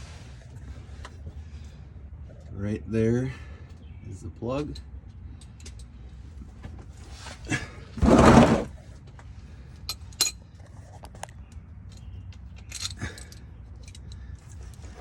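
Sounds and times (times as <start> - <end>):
rattling metal scrape: 8.0 - 8.8
metal tools clinking: 11.9 - 14.9.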